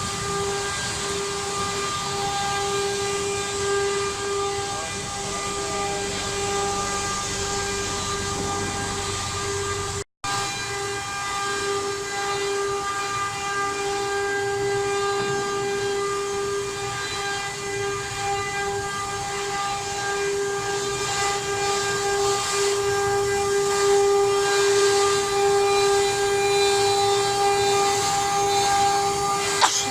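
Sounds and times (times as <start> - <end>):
wood router spindle whine: 0.0 - 29.9
dust extraction hiss: 26.8 - 29.9.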